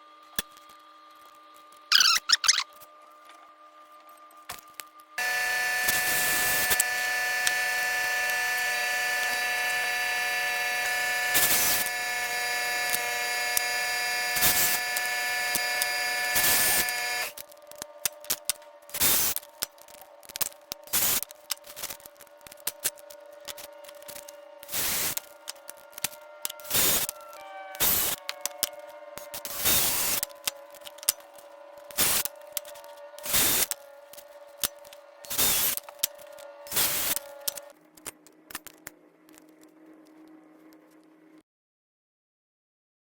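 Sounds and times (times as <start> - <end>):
power tool cutting metal sheet: 5.2 - 17.5, 18.9 - 19.4, 21.8 - 37.7.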